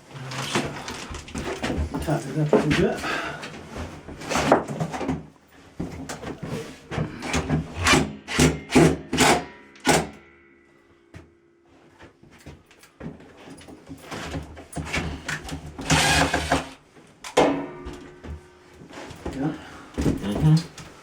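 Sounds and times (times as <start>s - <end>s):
screws scraping into wood: 15.8s - 16.8s.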